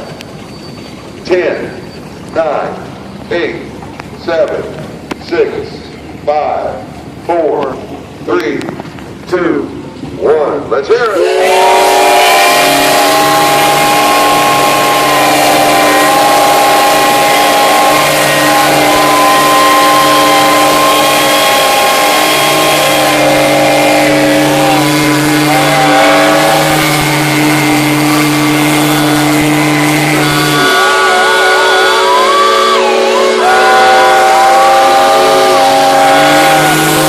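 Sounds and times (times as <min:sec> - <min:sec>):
steam whistles blowing: 0:11.0 - 0:37.0
steam hissing: 0:11.2 - 0:37.0.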